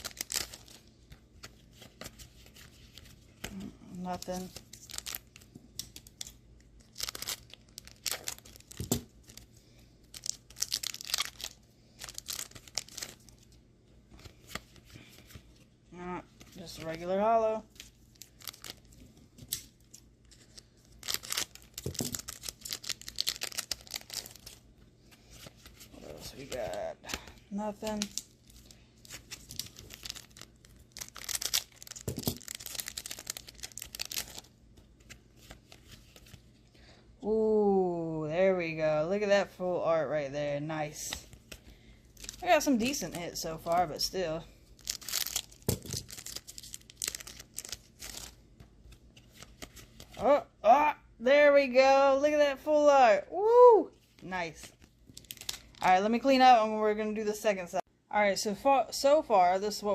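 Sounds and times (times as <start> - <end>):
foil wrappers crinkling: 0.0 - 13.6, 16.3 - 36.4, 40.9 - 50.2, 54.2 - 56.0.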